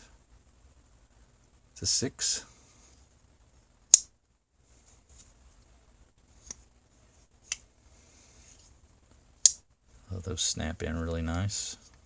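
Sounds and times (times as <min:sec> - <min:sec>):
faint handling sounds: 0:04.6 - 0:12.0.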